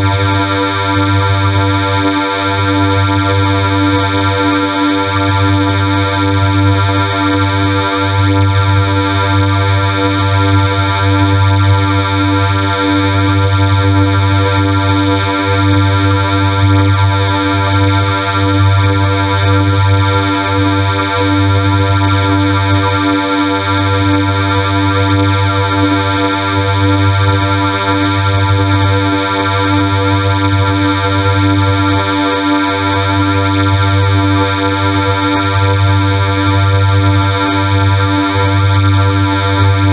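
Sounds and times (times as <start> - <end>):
harsh synthesized buzzing drone: 0.0 - 39.9.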